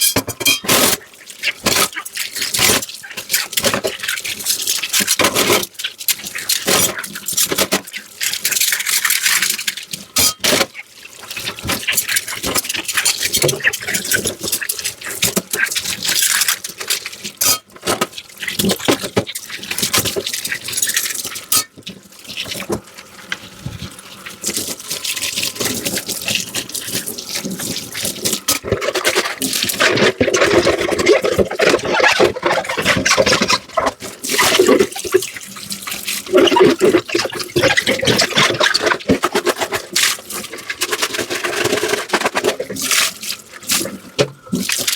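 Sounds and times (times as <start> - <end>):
dishes clinking: 0.0 - 1.0
tap water running into sink: 0.0 - 44.9
vessel filling with water: 0.0 - 44.9.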